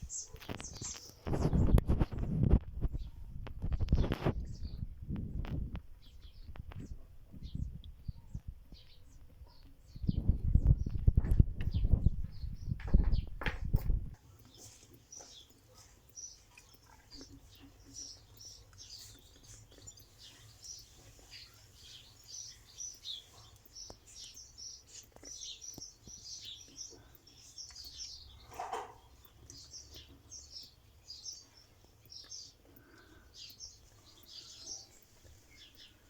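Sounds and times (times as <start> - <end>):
small birds chirping: 0.0 - 36.0.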